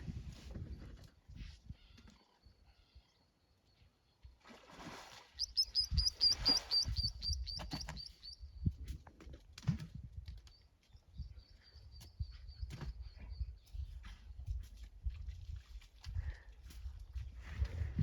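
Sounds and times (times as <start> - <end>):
bird chirping high: 5.4 - 8.4.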